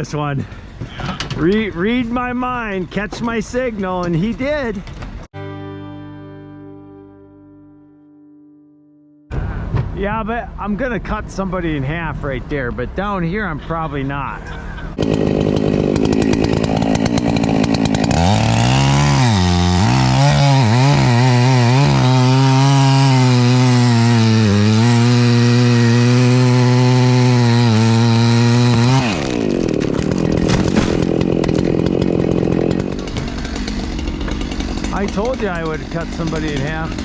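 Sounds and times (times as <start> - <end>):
chainsaw cutting tree trunk: 14.9 - 37.0.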